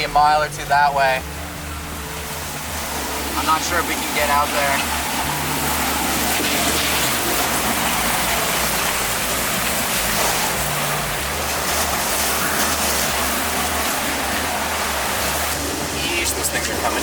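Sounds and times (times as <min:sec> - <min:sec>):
driving rain on a car: 0:00.0 - 0:17.0.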